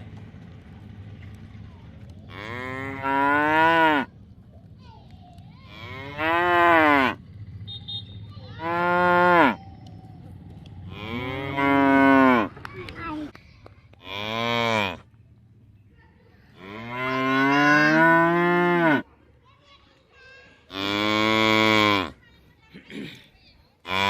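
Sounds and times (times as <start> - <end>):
buffalo lowing: 8.6 - 12.6.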